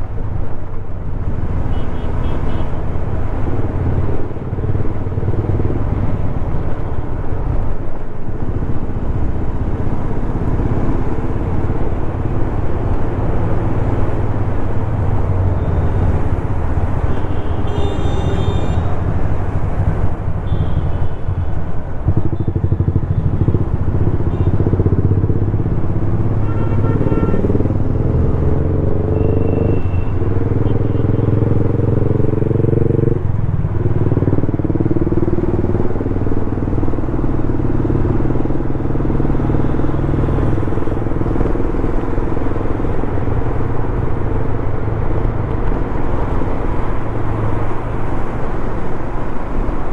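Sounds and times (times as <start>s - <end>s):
high tones from traffic: 1.6s - 3.2s, 13.2s - 24.9s, 26.3s - 27.8s, 28.9s - 31.6s
motorcycle engine running: 8.5s - 26.0s.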